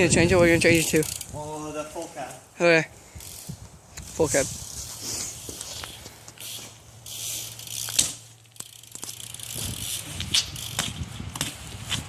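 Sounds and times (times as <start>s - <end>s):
bike tyres rolling on pavement: 0.0s - 12.0s
ticking freewheel hub: 7.5s - 11.4s.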